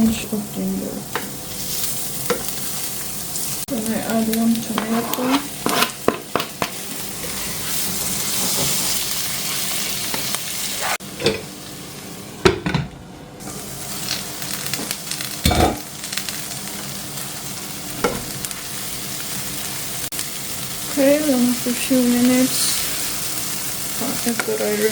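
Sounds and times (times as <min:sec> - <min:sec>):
vegetables sizzling in a pan: 0:00.0 - 0:12.7, 0:13.4 - 0:24.9
spoon scraping a pan: 0:04.6 - 0:06.7.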